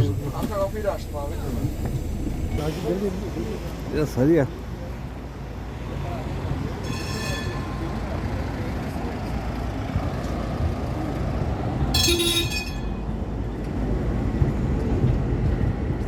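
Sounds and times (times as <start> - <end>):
street traffic rumbling: 0.0 - 16.0
short car horn toot: 12.0 - 13.0.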